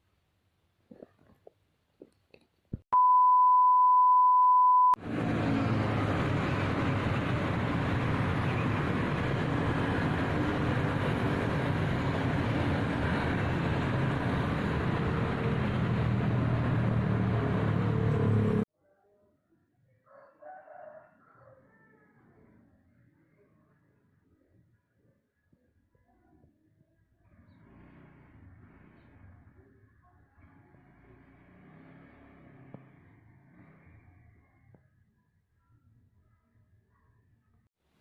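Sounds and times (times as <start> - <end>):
steady high beep: 3.0 - 5.0.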